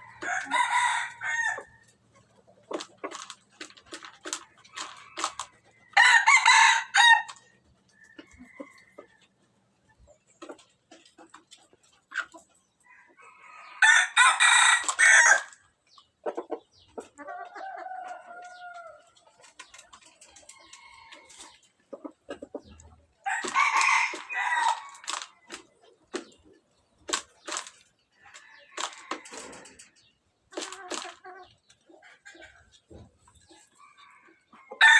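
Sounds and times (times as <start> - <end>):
rooster crowing: 0.0 - 1.8, 5.9 - 7.3, 23.3 - 25.0
chicken clucking: 0.0 - 34.9.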